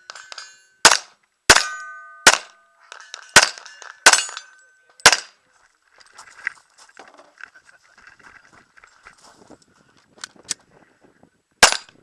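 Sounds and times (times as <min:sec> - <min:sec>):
metallic ringing of steel targets: 0:00.0 - 0:05.4, 0:11.6 - 0:12.0
handgun shots: 0:11.6 - 0:12.0.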